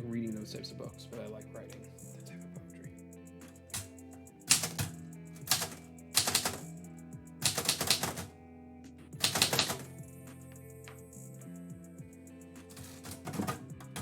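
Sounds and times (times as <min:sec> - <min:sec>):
background music: 0:00.0 - 0:14.0
manual typewriter typing: 0:03.7 - 0:03.9, 0:04.5 - 0:06.7, 0:07.4 - 0:08.3, 0:09.2 - 0:09.9, 0:12.7 - 0:14.0.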